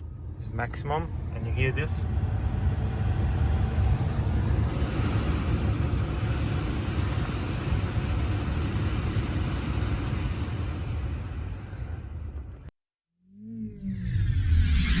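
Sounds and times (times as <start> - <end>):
car fan blowing loudly: 0.9 - 11.7.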